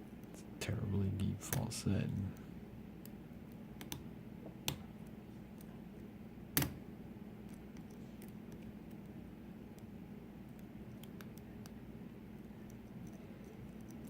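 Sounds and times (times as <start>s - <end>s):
faint low hum: 0.0s - 14.0s.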